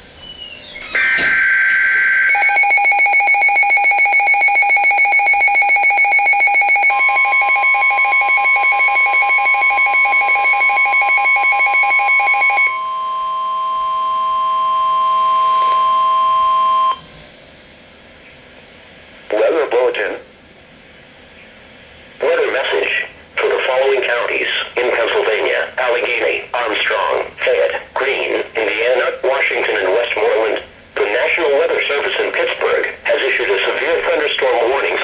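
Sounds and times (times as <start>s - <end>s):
electronic alarm beeping: 0.8s - 17.0s, 34.7s - 35.0s
steady warning alarm tone: 0.8s - 17.1s, 33.9s - 35.0s
two-tone digital data burst: 34.8s - 35.0s.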